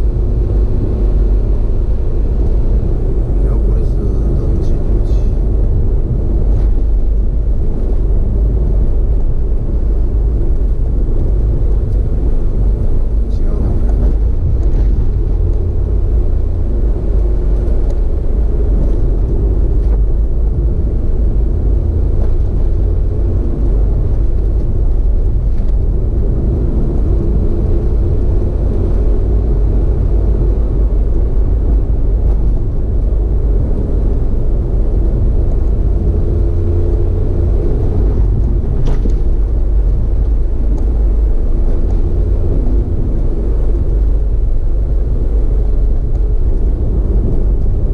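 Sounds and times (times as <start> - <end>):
vehicle rumble with engine hum: 0.0 - 47.9.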